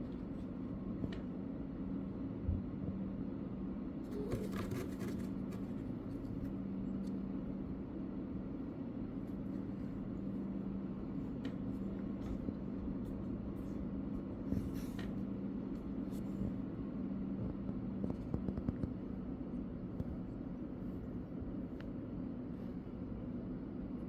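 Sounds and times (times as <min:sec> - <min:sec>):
steady low hum: 0:00.0 - 0:24.0
scratching and rustling in cardboard: 0:04.1 - 0:06.6.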